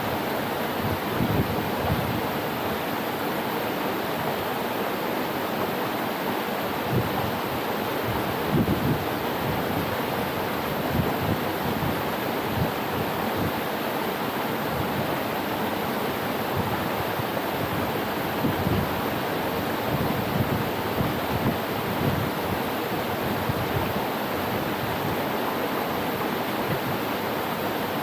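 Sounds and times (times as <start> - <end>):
flowing water rushing: 0.0 - 28.0
wind buffeting microphone: 0.8 - 2.3, 8.1 - 10.1, 16.6 - 19.0, 19.8 - 25.2.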